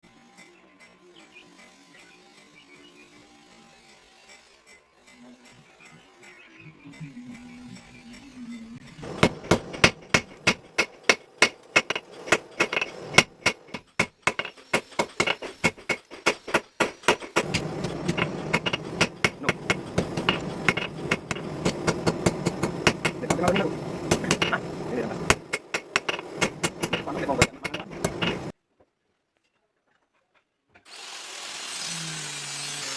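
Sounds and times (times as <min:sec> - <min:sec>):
hammer striking steel on anvil: 0:09.0 - 0:28.5
steady low rumble: 0:17.4 - 0:28.5.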